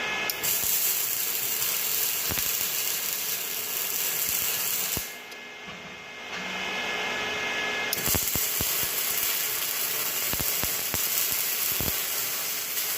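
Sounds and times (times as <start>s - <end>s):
welding arc crackling: 0.3s - 5.4s, 7.9s - 12.9s.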